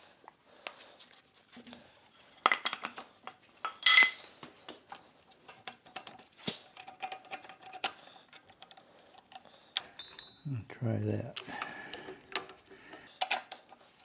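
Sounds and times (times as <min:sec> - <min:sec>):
wrench clinking on metal nut: 0:03.7 - 0:04.2, 0:09.6 - 0:10.5.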